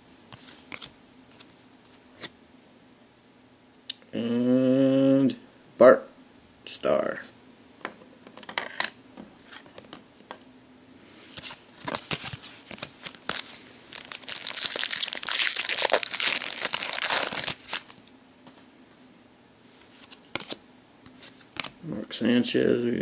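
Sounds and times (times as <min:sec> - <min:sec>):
foil wrapper crinkling and tearing: 0:11.8 - 0:18.1.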